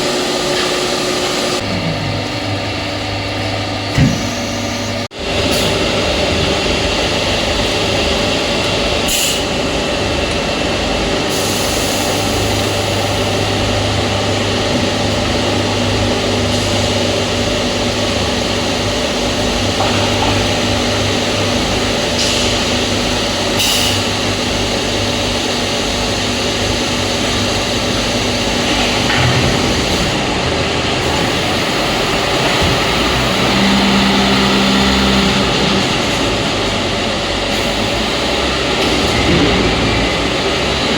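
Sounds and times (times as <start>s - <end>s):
deeper hum: 0.0s - 11.2s
hydraulic press humming: 0.0s - 40.9s.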